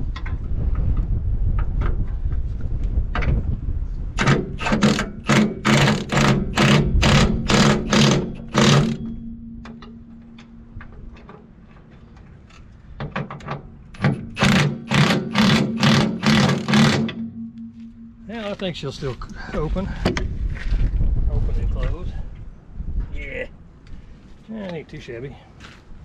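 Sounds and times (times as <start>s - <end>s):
metal ringing: 4.2s - 11.4s, 14.0s - 19.0s.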